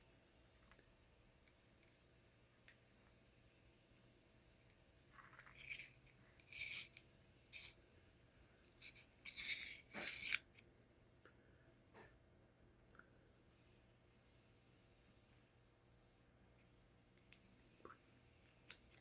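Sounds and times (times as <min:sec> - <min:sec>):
rubbing and scraping metal parts: 0:05.2 - 0:07.8, 0:08.8 - 0:10.6.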